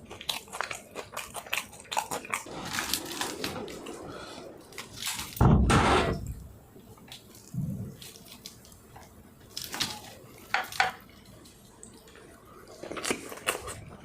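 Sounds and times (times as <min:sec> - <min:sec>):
wet chewing and smacking: 0:00.0 - 0:03.4, 0:07.0 - 0:14.0.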